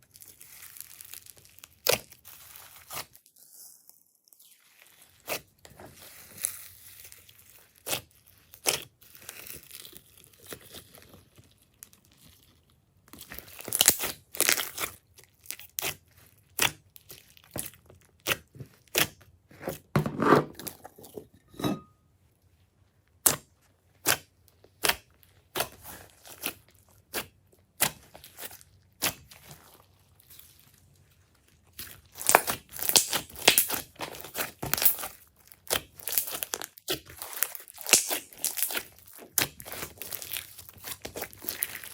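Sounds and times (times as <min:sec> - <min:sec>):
slime squishing and popping: 0:13.1 - 0:19.2, 0:31.7 - 0:41.9.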